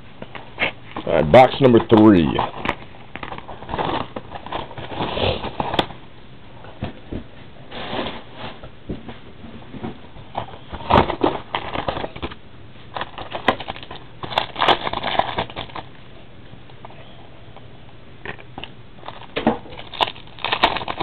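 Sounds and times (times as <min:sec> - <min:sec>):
packaging crinkling and tearing: 0:01.3 - 0:06.0, 0:10.3 - 0:16.0, 0:19.0 - 0:21.0.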